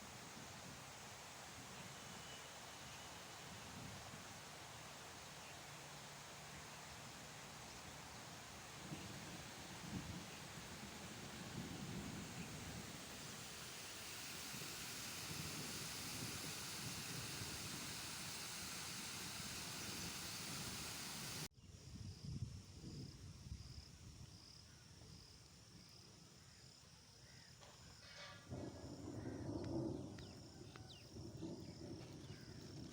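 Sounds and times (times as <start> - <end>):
rain falling: 0.0 - 21.5
insect chirping: 0.0 - 32.9.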